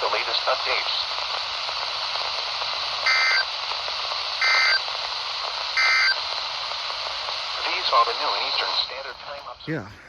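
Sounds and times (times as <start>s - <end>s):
radio static hiss: 0.0s - 10.0s
two-tone digital data squawk: 5.8s - 6.2s.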